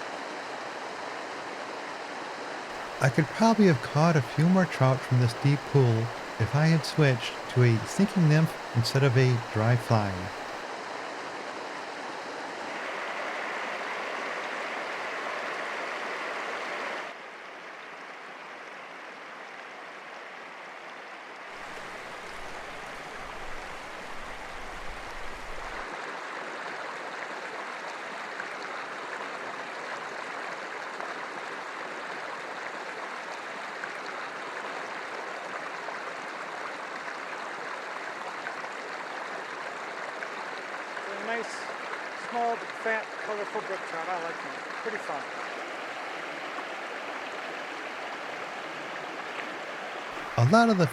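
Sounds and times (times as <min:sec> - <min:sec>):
stream rushing over rocks: 0:02.7 - 0:10.6, 0:21.6 - 0:25.8.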